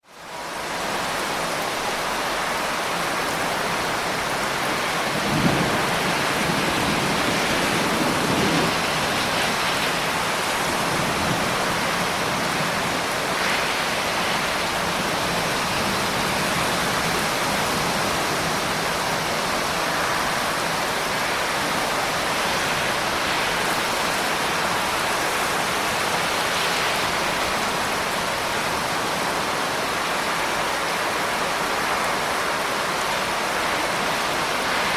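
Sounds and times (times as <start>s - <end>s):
heavy rain: 0.0s - 34.9s
thunder rumbling: 3.4s - 12.6s.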